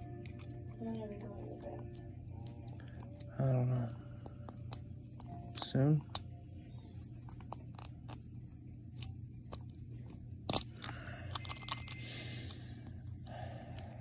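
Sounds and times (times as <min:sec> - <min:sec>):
low steady hum: 0:00.0 - 0:14.0
lock pick clicks and scrapes: 0:10.4 - 0:12.0.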